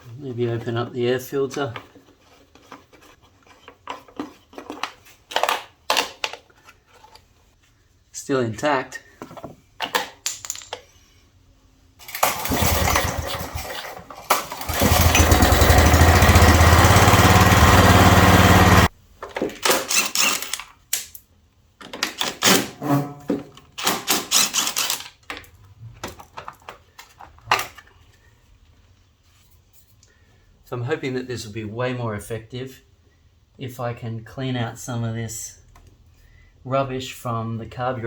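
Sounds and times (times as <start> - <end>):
lawnmower engine running: 12.0 - 18.9
pull-start cranking: 12.0 - 18.9, 19.6 - 20.7, 23.8 - 25.2
handling clicks and knocks: 12.0 - 21.2, 21.8 - 28.0.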